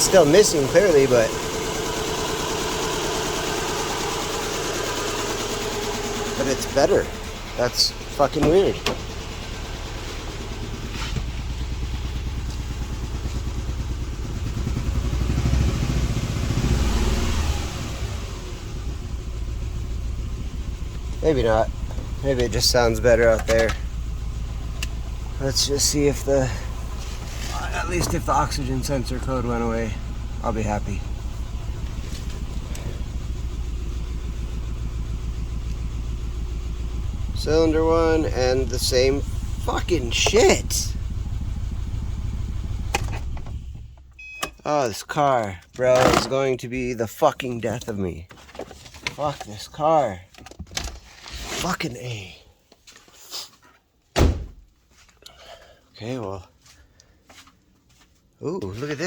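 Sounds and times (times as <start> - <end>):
misfiring car engine running: 0.0 - 44.4.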